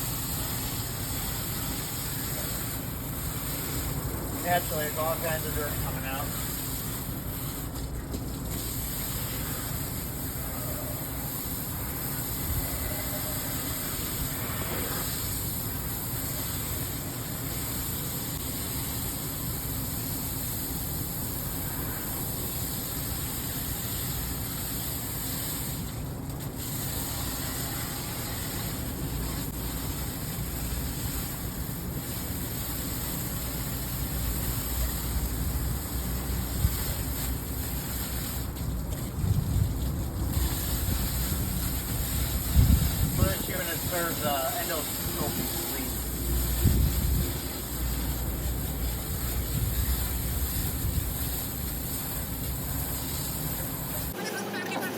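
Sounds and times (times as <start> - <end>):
hose spraying water on metal fins: 0.0 - 54.2
wind rumble on microphone: 40.8 - 43.5, 46.5 - 47.4.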